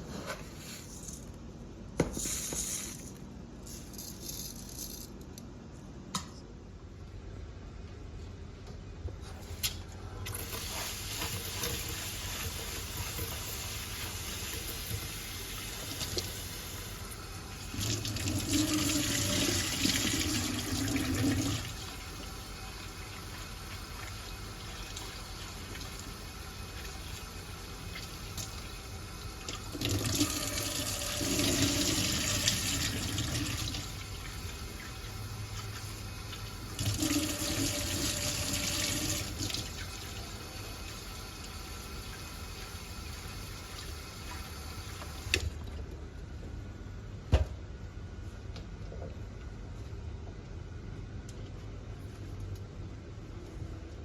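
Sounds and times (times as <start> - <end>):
water running: 10.2 - 45.4.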